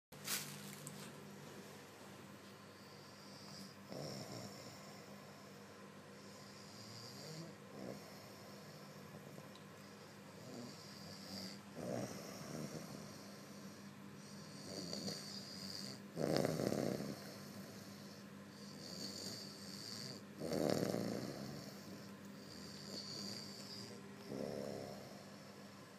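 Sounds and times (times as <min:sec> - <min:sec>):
man snoring: 0:02.8 - 0:05.5, 0:06.2 - 0:09.0, 0:10.3 - 0:25.7.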